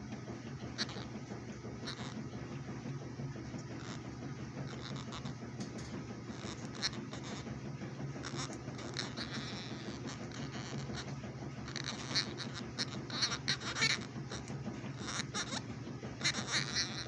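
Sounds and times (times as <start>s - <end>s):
steady low hum: 0.0s - 17.0s
parrot squawking and chattering: 0.7s - 2.3s, 3.6s - 5.4s, 6.2s - 7.6s, 8.2s - 17.0s.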